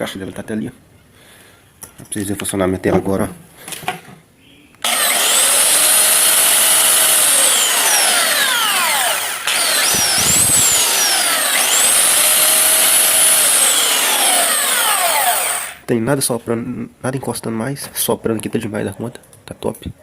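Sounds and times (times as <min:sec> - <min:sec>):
belt sander motor whining: 0:04.8 - 0:15.8.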